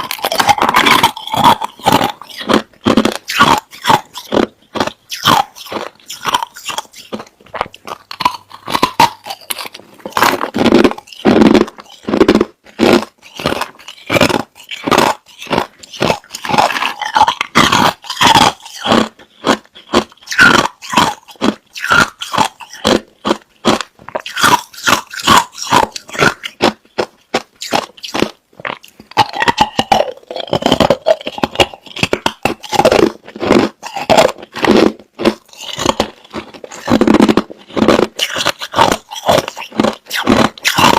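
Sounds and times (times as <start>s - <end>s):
crushed ice being chewed: 0.0s - 40.9s.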